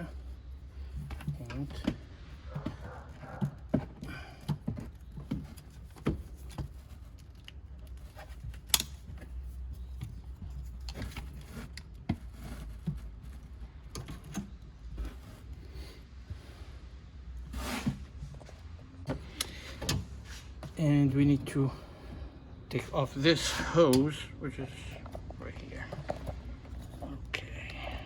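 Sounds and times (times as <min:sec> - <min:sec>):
hands and tools clicking and rattling: 0:00.0 - 0:15.7, 0:22.7 - 0:28.0.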